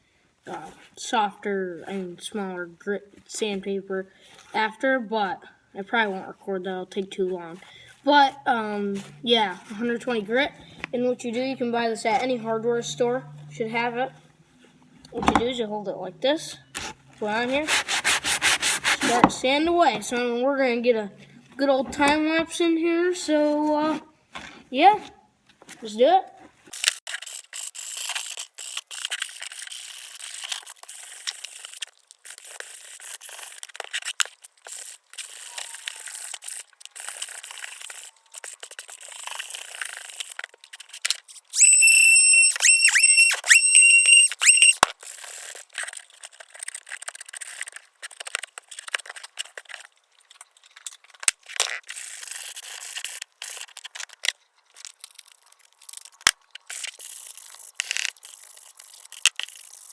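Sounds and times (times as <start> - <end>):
sandpaper rasping on wood: 17.4 - 19.6
loud high-pitched tone: 41.6 - 44.8.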